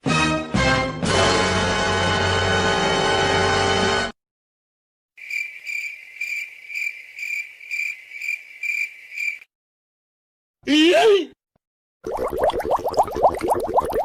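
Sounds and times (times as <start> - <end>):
crickets chirping: 5.2 - 9.5.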